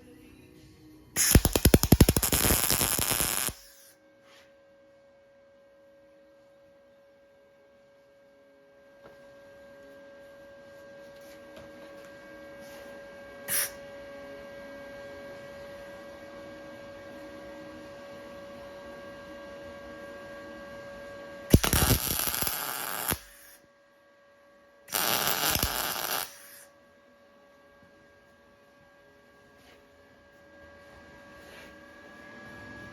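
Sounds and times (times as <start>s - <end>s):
steady hum: 1.2s - 3.9s, 21.5s - 23.6s, 24.9s - 26.7s
welding arc crackling hiss: 1.2s - 3.9s, 13.5s - 13.8s, 21.5s - 23.6s, 24.9s - 26.7s.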